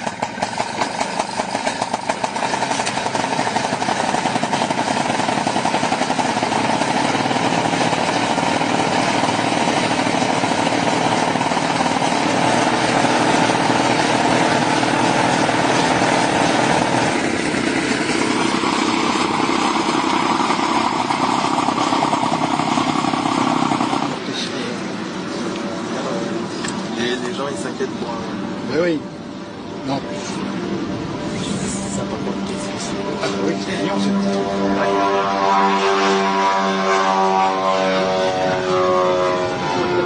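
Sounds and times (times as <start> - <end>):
small engine running: 0.0 - 24.6.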